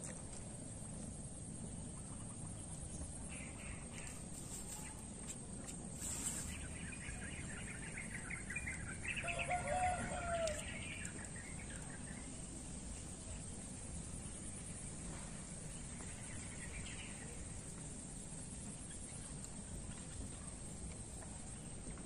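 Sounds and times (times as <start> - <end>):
low outdoor background: 0.0 - 22.0
chickens calling: 6.3 - 12.1
rooster call: 9.1 - 11.0.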